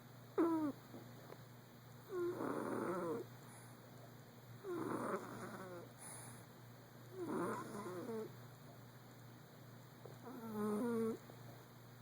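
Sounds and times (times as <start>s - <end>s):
cat snoring: 0.4s - 0.8s, 2.1s - 3.3s, 4.6s - 6.4s, 7.1s - 8.3s, 10.2s - 11.2s.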